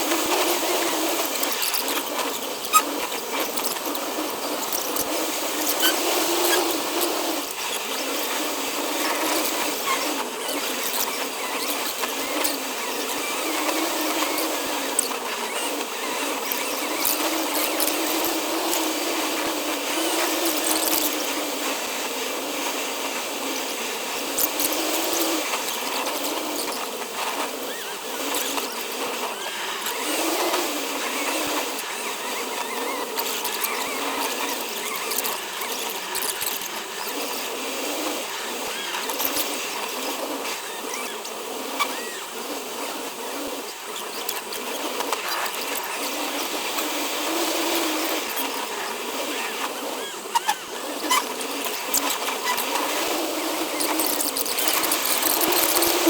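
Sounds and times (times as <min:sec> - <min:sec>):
scattered ticks: 0:00.0 - 0:21.4, 0:32.6 - 0:37.5, 0:51.0 - 0:56.0.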